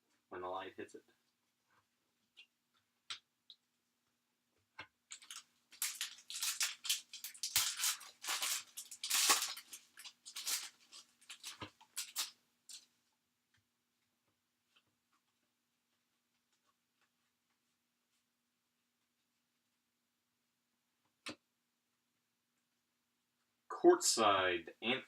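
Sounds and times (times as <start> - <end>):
wrapper torn and crinkled: 5.1 - 12.8.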